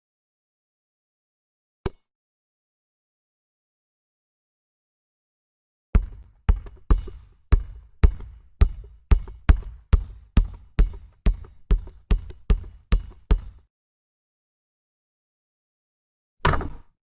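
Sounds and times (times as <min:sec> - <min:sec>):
basketball bouncing: 0:06.0 - 0:13.6.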